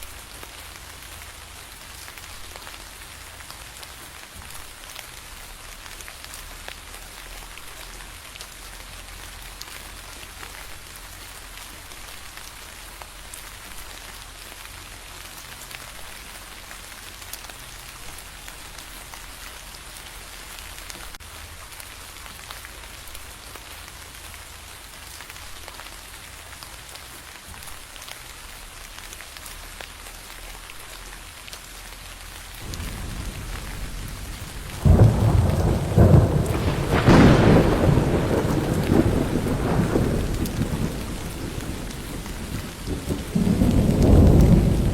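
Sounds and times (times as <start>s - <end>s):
rain pattering: 0.0s - 44.9s
thunder rumbling: 32.6s - 44.9s.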